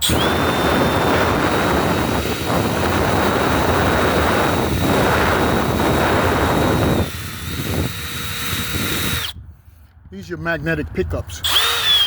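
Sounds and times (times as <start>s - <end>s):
electric drill high whine: 0.0s - 9.4s, 11.4s - 12.0s.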